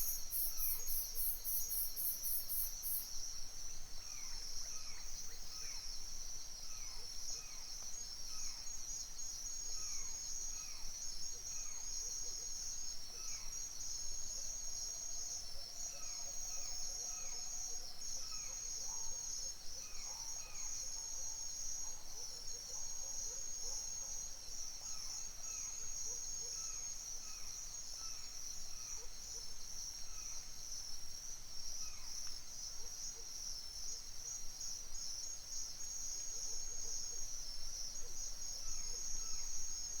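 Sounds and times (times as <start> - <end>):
insects trilling: 0.0 - 3.1.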